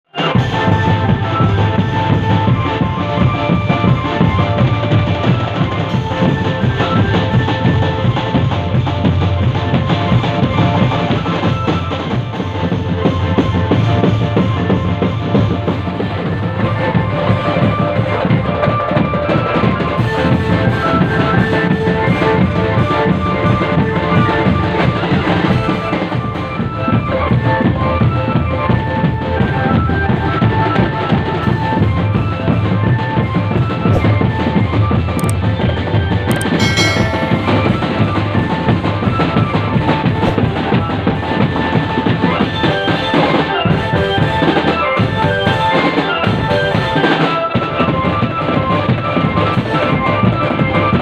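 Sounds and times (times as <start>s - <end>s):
drum band playing: 0.2s - 35.6s, 36.3s - 51.0s
bass and snare drums beating: 0.2s - 48.8s
sustained melodic line: 36.3s - 40.1s.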